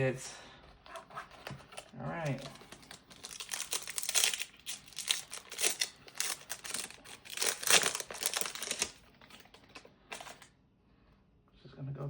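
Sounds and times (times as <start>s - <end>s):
foil wrapper crinkling: 2.1s - 10.5s.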